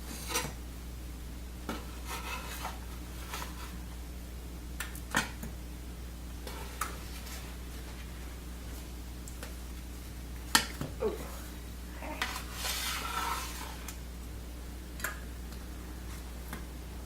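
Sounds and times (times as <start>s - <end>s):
kitchenware clinking and scraping: 0.1s - 0.6s, 12.1s - 13.9s.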